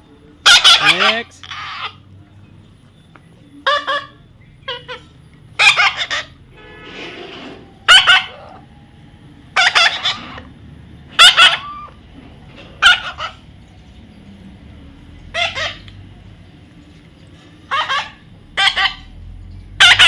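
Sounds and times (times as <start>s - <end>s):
parrot harsh squawks: 0.4s - 2.0s, 3.6s - 8.6s, 9.5s - 10.5s, 11.1s - 12.0s, 12.8s - 13.4s, 15.3s - 15.9s, 17.6s - 19.2s, 19.8s - 20.0s.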